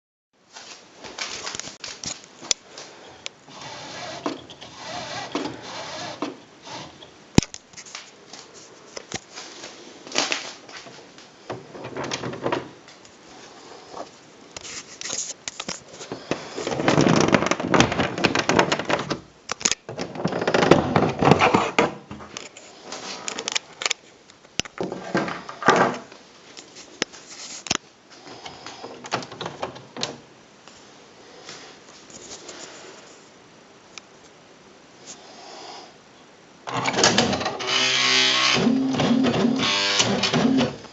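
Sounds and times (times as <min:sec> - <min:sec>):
typewriter clicking and clattering: 0:36.8 - 0:40.8.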